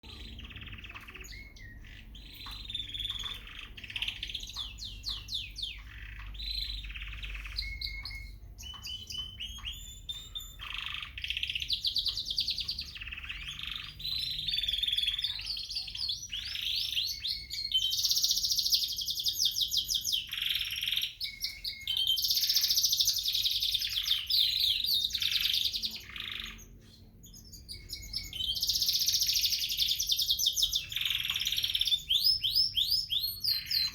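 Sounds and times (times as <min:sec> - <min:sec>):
canaries singing trills: 0:00.0 - 0:33.9.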